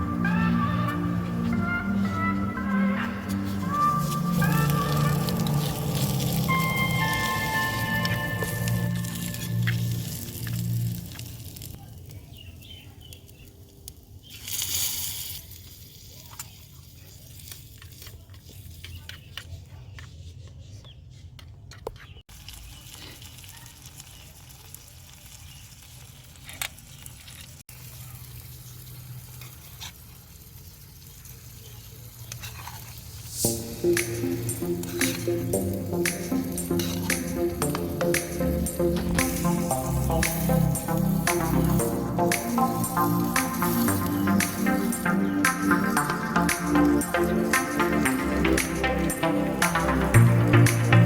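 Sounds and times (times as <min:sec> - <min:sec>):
food sizzling in a pan: 0:14.2 - 0:17.6, 0:22.3 - 0:37.9, 0:38.5 - 0:48.7.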